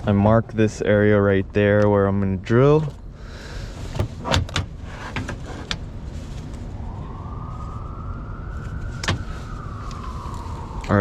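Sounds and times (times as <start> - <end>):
handling clicks and knocks: 3.9 - 4.7.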